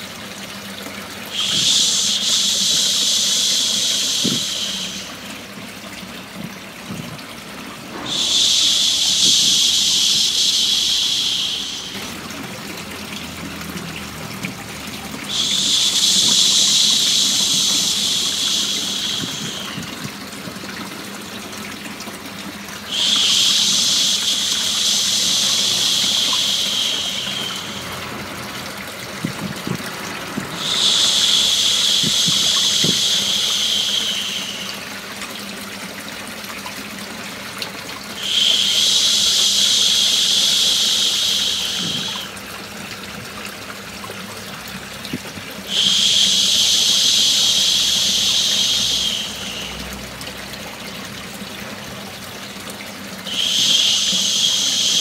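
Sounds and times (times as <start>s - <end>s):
running water: 0.0s - 55.0s
person shushing: 1.3s - 5.2s, 8.0s - 12.5s, 15.3s - 20.0s, 22.9s - 28.0s.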